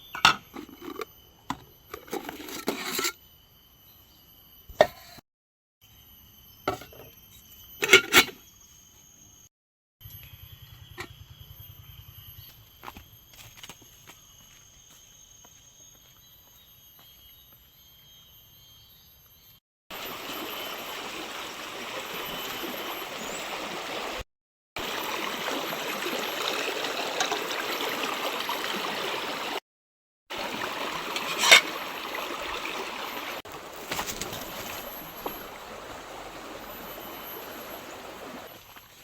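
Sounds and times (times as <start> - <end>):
stream water rushing: 20.0 - 24.2, 24.8 - 29.6, 30.3 - 38.8.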